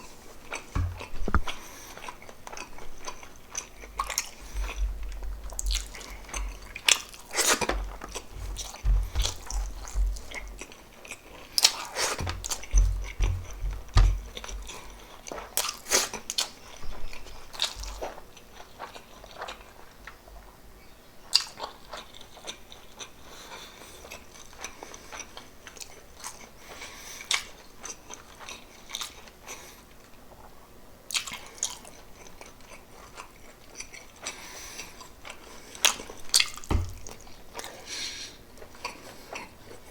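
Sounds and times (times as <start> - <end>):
close chewing and biting: 0.0 - 20.2, 31.1 - 37.9
low thumps: 0.8 - 1.6, 4.4 - 6.8, 7.6 - 10.6, 12.2 - 15.0.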